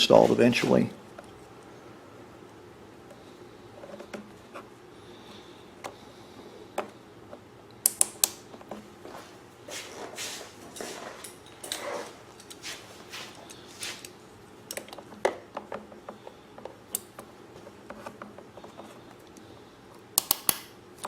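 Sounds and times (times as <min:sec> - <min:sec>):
small clicks of handled parts: 0:20.2 - 0:20.7.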